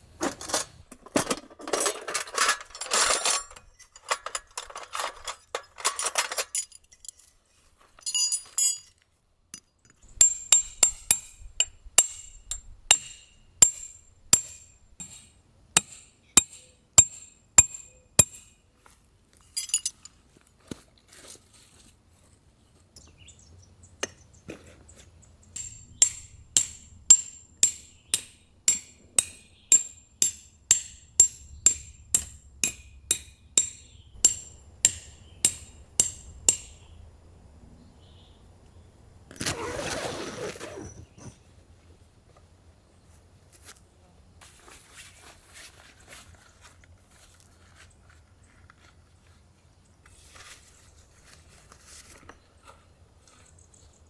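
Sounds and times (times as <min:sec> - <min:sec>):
metallic clatter: 0:00.2 - 0:07.2, 0:19.6 - 0:20.1, 0:39.3 - 0:41.4
hammer striking metal tent peg: 0:10.2 - 0:18.6, 0:25.6 - 0:36.9.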